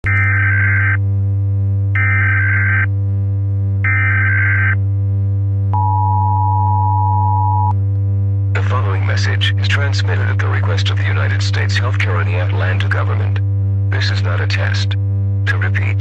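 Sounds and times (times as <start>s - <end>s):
steady low hum: 0.2s - 16.0s
two-tone attention signal: 5.8s - 7.8s.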